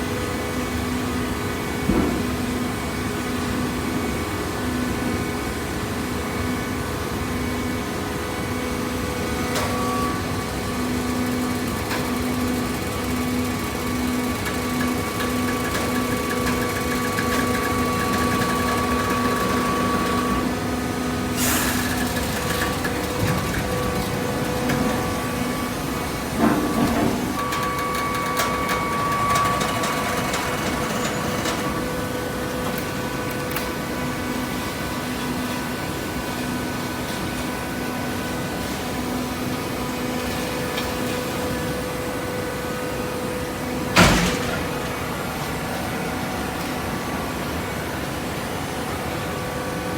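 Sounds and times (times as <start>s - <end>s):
baler machine humming: 9.2s - 34.6s
loud machine clunk: 14.1s - 32.0s, 43.8s - 45.9s
machine knocks: 44.0s - 45.3s.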